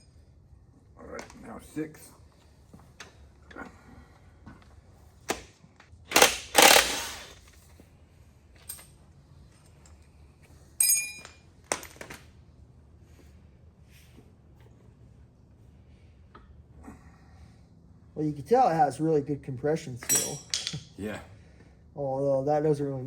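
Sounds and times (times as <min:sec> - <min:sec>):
ringing metallic clink: 0:10.8 - 0:11.4, 0:20.0 - 0:20.8.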